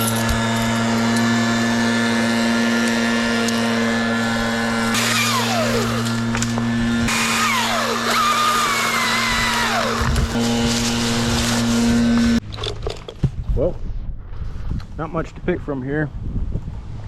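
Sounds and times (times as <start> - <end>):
chainsaw revving: 0.0 - 12.4
engine drone: 0.0 - 12.4.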